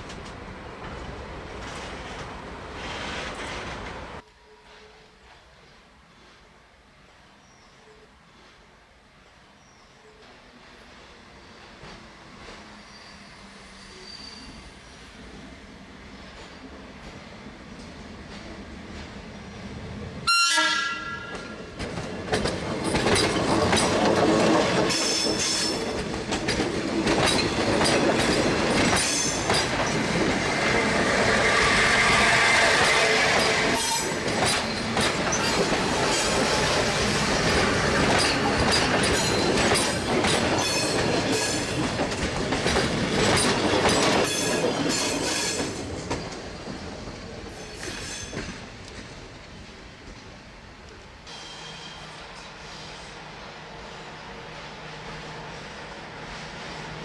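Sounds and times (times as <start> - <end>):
train horn: 20.2 - 21.5
train wheels clattering over rail joints: 21.3 - 50.3.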